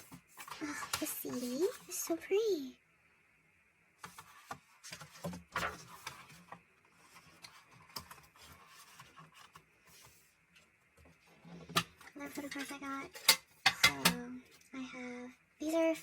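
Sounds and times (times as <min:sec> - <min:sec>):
rustling of paper and plastic: 0:04.0 - 0:13.2.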